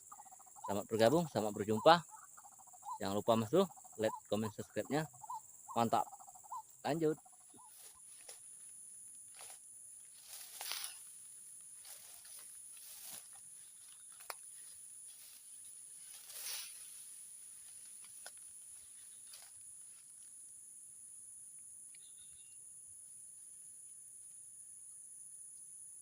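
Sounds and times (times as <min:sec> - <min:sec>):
insect chorus drone: 0:00.0 - 0:26.0
rustling swishes: 0:15.1 - 0:18.1.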